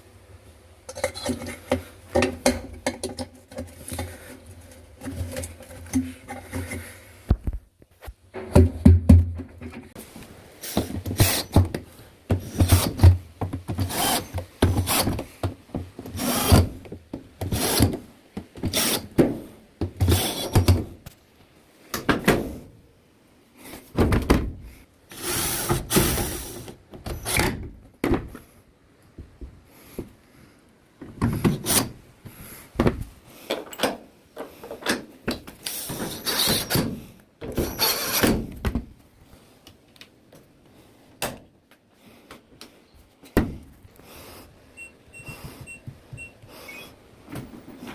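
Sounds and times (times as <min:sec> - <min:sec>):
hands scraping and rubbing parts: 0:00.8 - 0:08.8.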